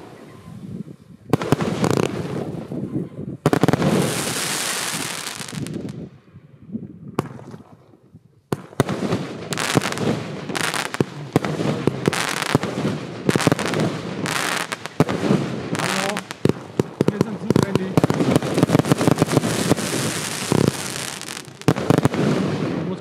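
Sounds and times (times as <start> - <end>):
firework sharp crack: 1.3 - 2.7, 3.4 - 6.0, 8.5 - 23.0
fireworks rapid bangs and crackle: 1.3 - 2.8, 3.4 - 6.0, 8.5 - 23.0.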